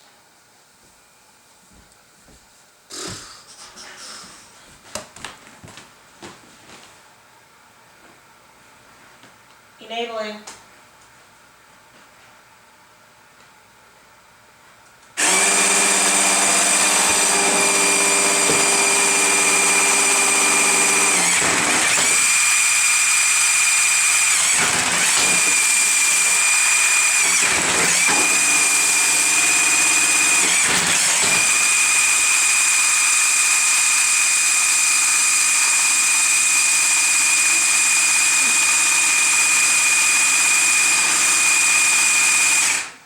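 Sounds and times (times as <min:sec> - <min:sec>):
electric motors whining: 0:15.2 - 0:43.0.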